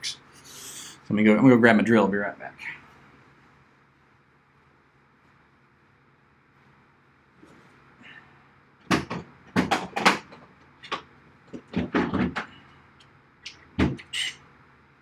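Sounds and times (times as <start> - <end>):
hard objects knocking: 8.9 - 12.5.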